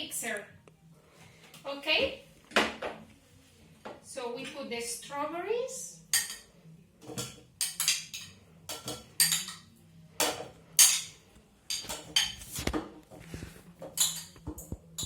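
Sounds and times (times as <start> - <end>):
spoon clinking against a dish: 6.1 - 6.5, 7.1 - 12.4, 14.0 - 14.4.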